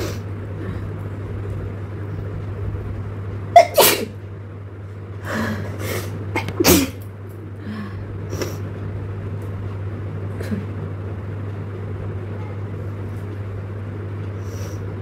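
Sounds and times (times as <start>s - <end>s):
person sneezing: 3.6s - 4.1s.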